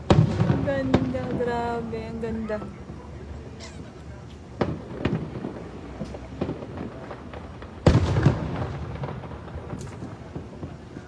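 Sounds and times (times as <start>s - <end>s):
heavy firework booms: 0.0s - 3.0s, 4.5s - 11.0s
light firework pops: 3.8s - 11.0s
rumble after booms: 4.4s - 11.0s.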